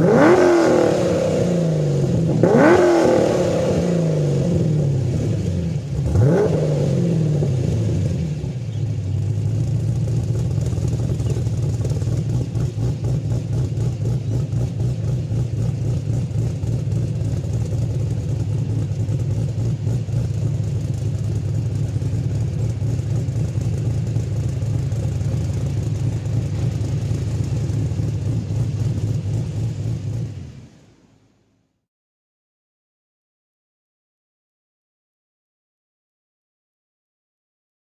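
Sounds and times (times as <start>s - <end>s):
car engine revving and idling: 0.0s - 31.3s.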